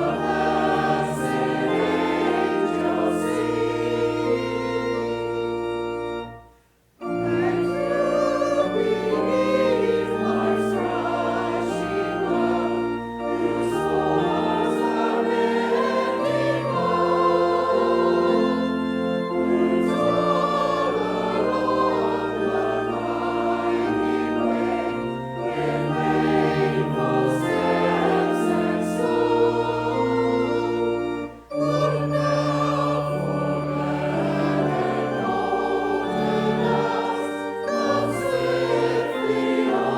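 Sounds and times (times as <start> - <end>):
choir singing a hymn: 0.0 - 6.4, 7.0 - 39.9.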